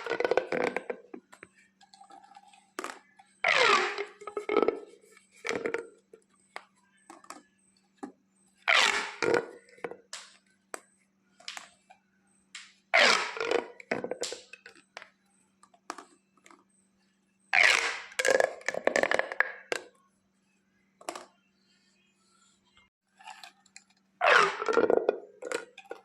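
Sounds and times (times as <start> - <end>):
plastic pop tubes popping: 0.0 - 1.4, 2.8 - 5.9, 8.7 - 10.4, 12.6 - 15.1, 17.6 - 19.9.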